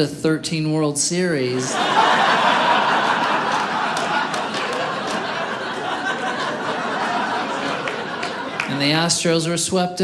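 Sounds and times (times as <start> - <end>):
audience laughing: 1.6 - 9.3
scattered claps: 3.1 - 5.5, 7.6 - 8.9.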